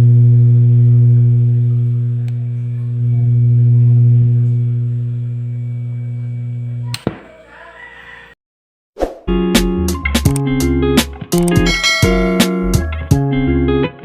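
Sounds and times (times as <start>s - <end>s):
loud low amplifier hum: 0.0s - 7.4s
switch click: 6.9s - 7.3s.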